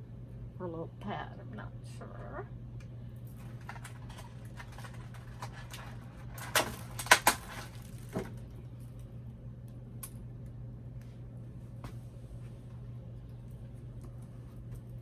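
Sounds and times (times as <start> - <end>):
steady low hum: 0.0 - 15.0
packaging rustling: 3.3 - 8.4.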